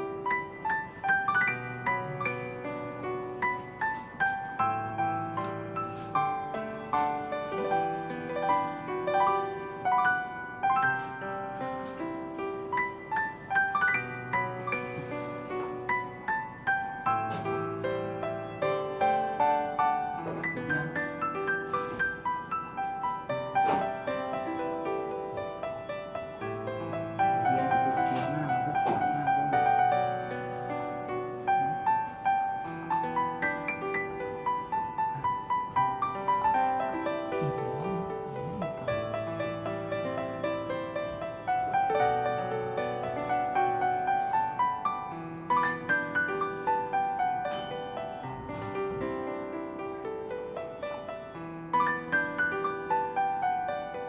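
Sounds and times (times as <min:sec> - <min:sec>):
gentle piano music: 0:00.0 - 0:54.0.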